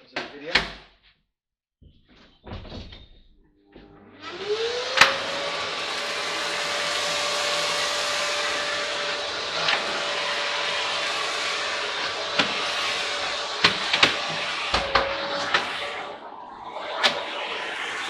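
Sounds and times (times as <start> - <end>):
vacuum cleaner running: 4.0 - 18.0.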